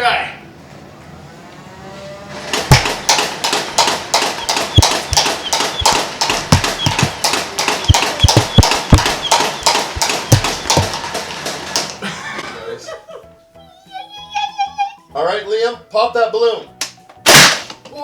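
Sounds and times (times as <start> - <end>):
dull thumps: 2.7 - 11.6.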